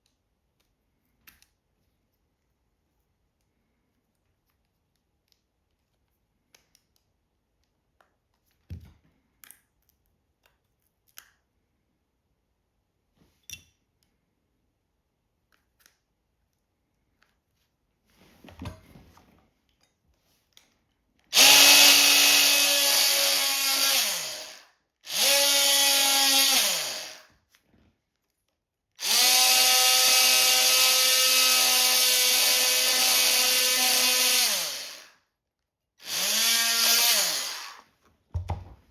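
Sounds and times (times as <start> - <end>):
power tool whining and grinding: 21.3 - 27.3, 29.0 - 35.2, 36.0 - 37.9.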